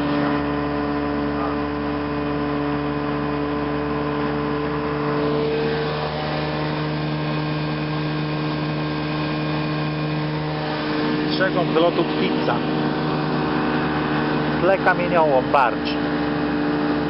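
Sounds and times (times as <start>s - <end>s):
airplane engine droning: 0.0s - 17.0s.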